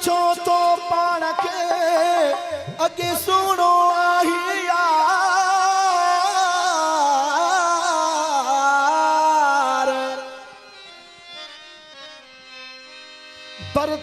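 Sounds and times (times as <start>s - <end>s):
folk song with wavering melody: 0.0s - 14.0s.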